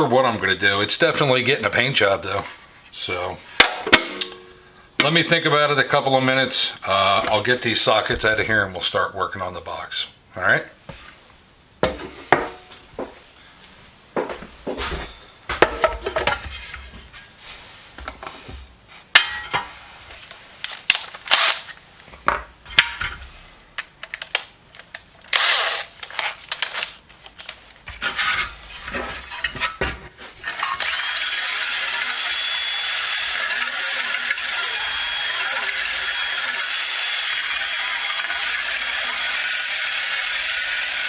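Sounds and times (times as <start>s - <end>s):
power tool whining: 30.2s - 41.0s.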